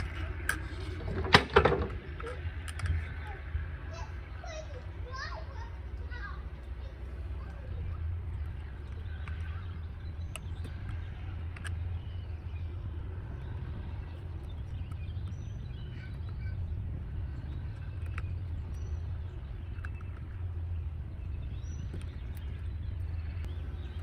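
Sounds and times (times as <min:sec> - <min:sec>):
steady low rumble: 0:00.0 - 0:24.0
bird chirps: 0:01.9 - 0:24.0
light clicks: 0:08.3 - 0:12.2.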